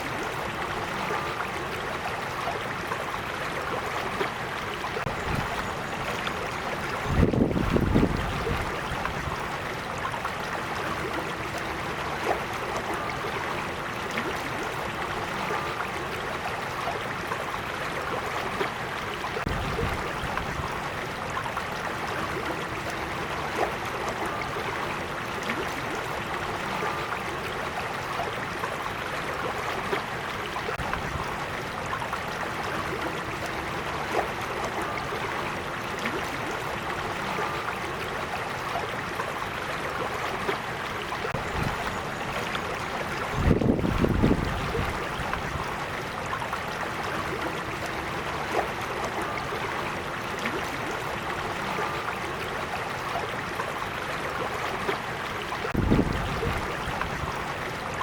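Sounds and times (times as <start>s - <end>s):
creek flowing over rocks: 0.0s - 58.0s
water splashes: 0.0s - 58.0s.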